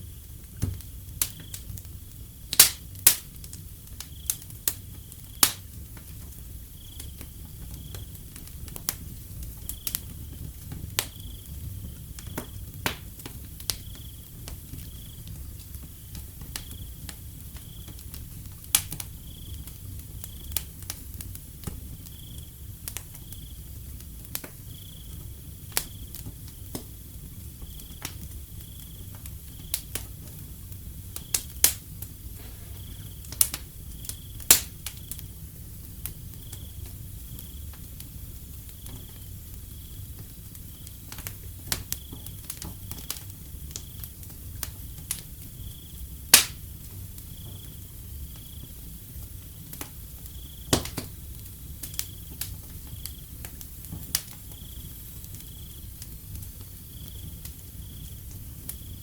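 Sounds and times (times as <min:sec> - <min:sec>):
wood fire crackling and popping: 0:00.0 - 0:59.0
cricket chirping: 0:01.2 - 0:01.7, 0:04.0 - 0:05.6, 0:06.5 - 0:08.3, 0:09.5 - 0:12.6, 0:13.7 - 0:15.3, 0:16.6 - 0:18.1, 0:19.2 - 0:20.6, 0:21.9 - 0:24.0, 0:24.6 - 0:26.2, 0:27.4 - 0:29.9, 0:32.4 - 0:35.3, 0:36.3 - 0:44.2, 0:44.8 - 0:46.2, 0:47.2 - 0:49.1, 0:50.2 - 0:53.5, 0:54.3 - 0:59.0.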